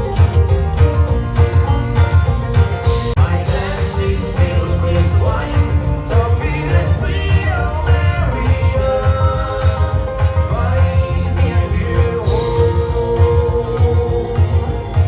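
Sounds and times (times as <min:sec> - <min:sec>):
plucked strings: 0:00.0 - 0:15.0
steady low beat: 0:00.0 - 0:15.0
person singing: 0:03.2 - 0:15.0.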